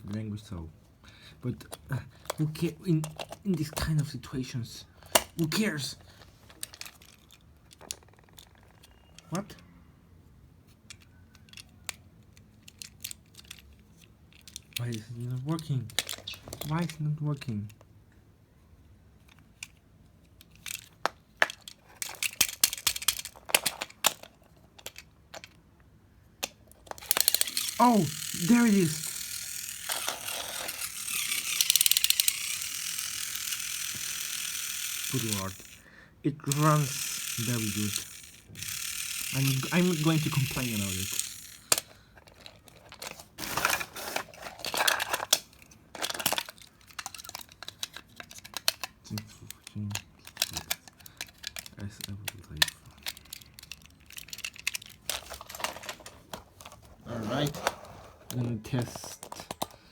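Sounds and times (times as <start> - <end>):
plastic toy clicks and rattles: 1.7 - 5.9, 6.5 - 9.4, 10.8 - 17.8, 19.2 - 25.6, 26.4 - 56.9, 58.3 - 59.8
packaging crinkling and rustling: 41.9 - 59.6.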